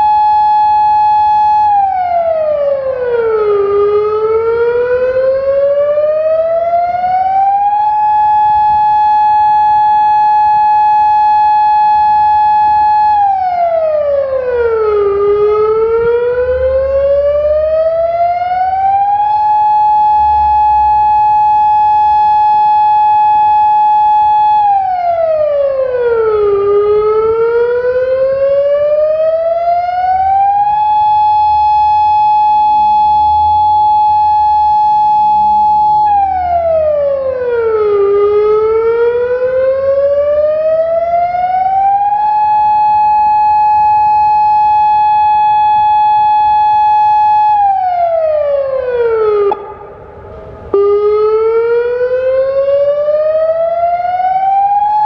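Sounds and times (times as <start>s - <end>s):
electronic warning siren: 0.0s - 55.0s.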